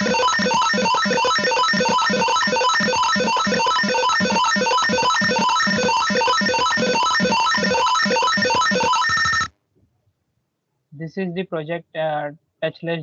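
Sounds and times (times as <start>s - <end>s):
rapid buzzer beeps: 0.0s - 9.5s.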